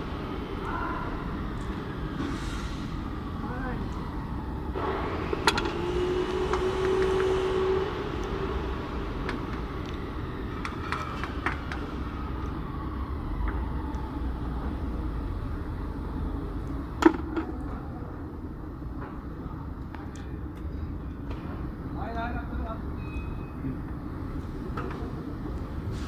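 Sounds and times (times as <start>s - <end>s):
low mechanical rumble: 0.0s - 23.0s
machine whine: 4.0s - 14.9s.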